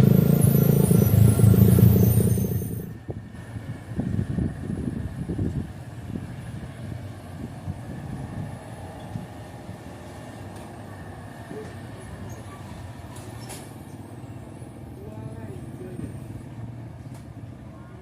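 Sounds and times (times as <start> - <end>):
heavy diesel engine running: 0.0 - 12.2.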